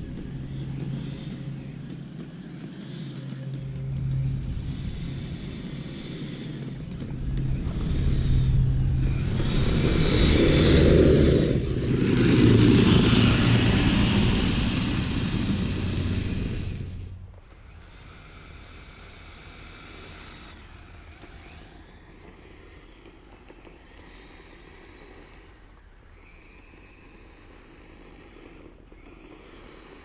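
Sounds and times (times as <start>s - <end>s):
toy vehicle motor humming: 0.0s - 30.0s.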